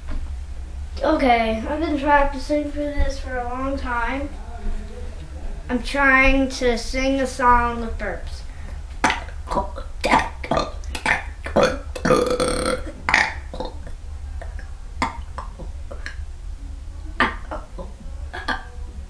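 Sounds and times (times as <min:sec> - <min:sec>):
person burping: 0:09.0 - 0:16.2, 0:17.1 - 0:18.8.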